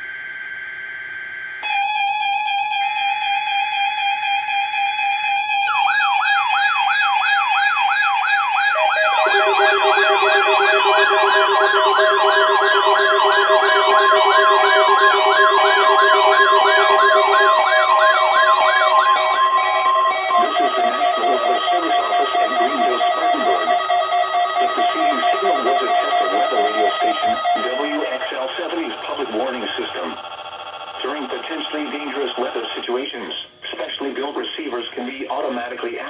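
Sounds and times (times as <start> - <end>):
fast warbling siren tone: 5.5 - 32.8
steady alarm beeping tones: 5.6 - 32.9.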